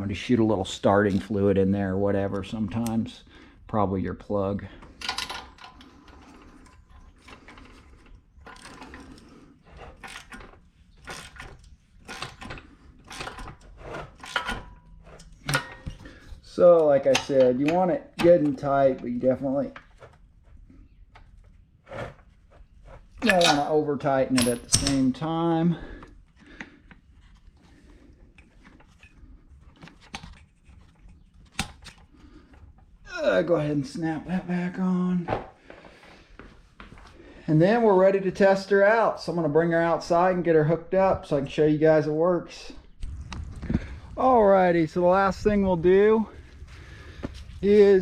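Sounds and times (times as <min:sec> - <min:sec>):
hand tools clicking and scraping: 0:04.7 - 0:32.8.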